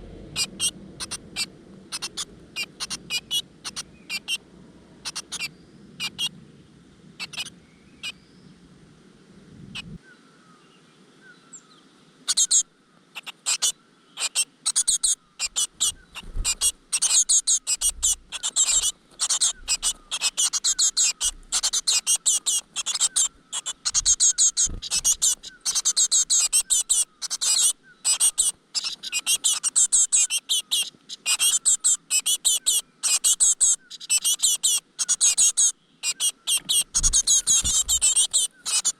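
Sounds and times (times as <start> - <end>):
nestlings cheeping: 0.0 - 4.4, 14.2 - 38.9.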